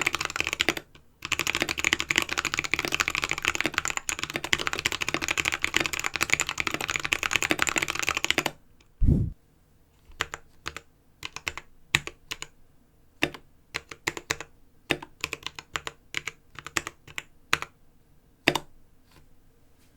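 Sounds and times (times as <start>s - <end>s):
mechanical keyboard typing: 0.0s - 8.6s, 10.1s - 12.5s, 13.2s - 17.7s
dull low thump: 9.0s - 9.4s.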